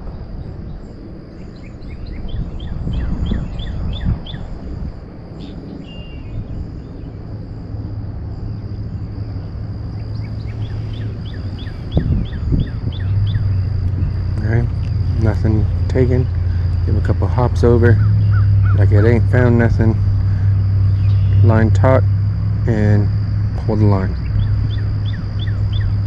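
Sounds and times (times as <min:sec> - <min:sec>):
songbird singing: 0:00.0 - 0:26.0
wind rumble: 0:00.0 - 0:26.0
thin high tone: 0:09.4 - 0:26.0.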